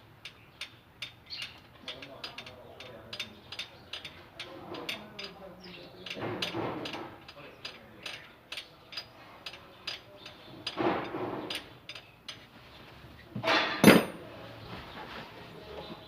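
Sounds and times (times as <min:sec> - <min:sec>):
ratchet wrench clicking: 0:00.2 - 0:10.8
loud metal clanks: 0:13.4 - 0:14.2.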